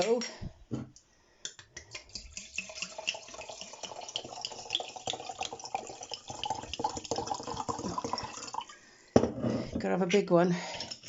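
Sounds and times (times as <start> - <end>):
drink pouring into glass: 1.8 - 8.8.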